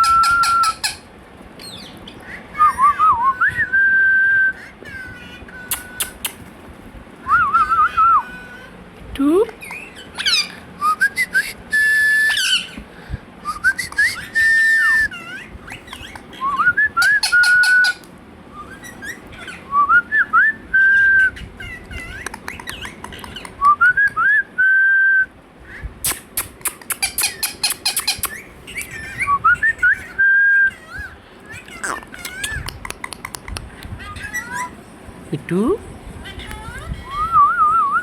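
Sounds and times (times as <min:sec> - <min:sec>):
parrot scratchy chatter: 0:00.0 - 0:02.6, 0:09.6 - 0:10.7, 0:13.9 - 0:18.1, 0:21.2 - 0:23.6, 0:26.0 - 0:29.3, 0:30.0 - 0:35.1
parrot whistling: 0:00.0 - 0:04.6, 0:09.6 - 0:12.8, 0:13.4 - 0:25.3, 0:26.7 - 0:32.7.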